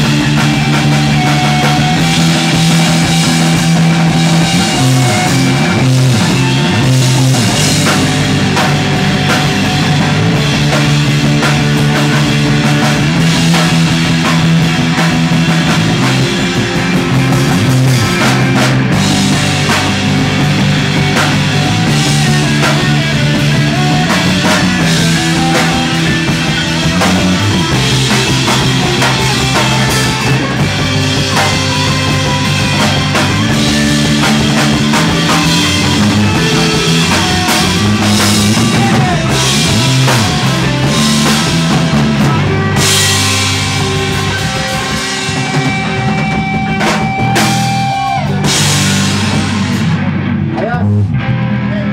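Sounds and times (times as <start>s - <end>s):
loud rock music: 0.0s - 51.9s.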